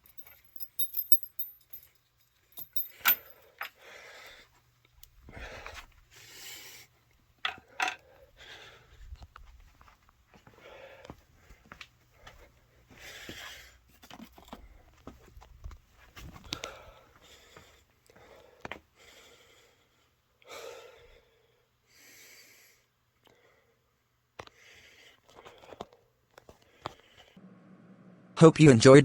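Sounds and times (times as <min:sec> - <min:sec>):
quiet breathing: 0:02.8 - 0:04.6, 0:05.2 - 0:09.4, 0:10.4 - 0:13.9, 0:16.3 - 0:27.4.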